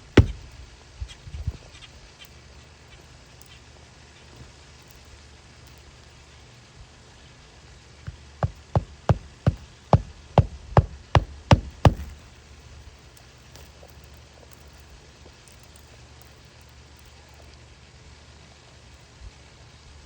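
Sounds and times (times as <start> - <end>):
sharp knocks: 0.2 - 0.6, 8.1 - 12.3.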